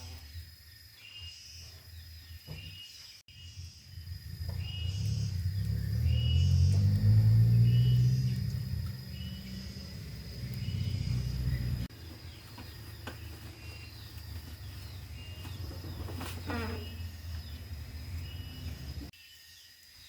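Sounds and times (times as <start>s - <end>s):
birds chirping: 0.0s - 19.9s
high insect tone: 0.0s - 20.0s
low buzzing hum: 3.3s - 19.1s.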